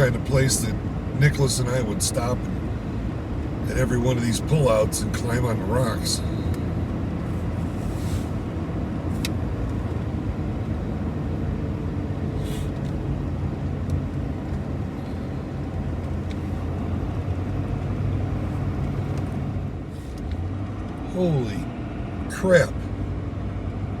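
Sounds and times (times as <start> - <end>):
truck engine and road drone: 0.0 - 24.0
short hiss: 7.8 - 8.4, 12.4 - 12.8.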